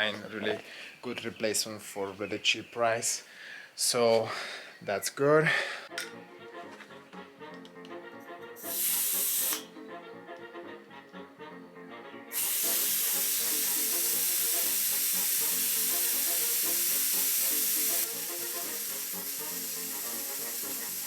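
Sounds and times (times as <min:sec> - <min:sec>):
background music: 0:05.9 - 0:21.0
spray can hissing: 0:08.6 - 0:09.7, 0:12.3 - 0:21.0.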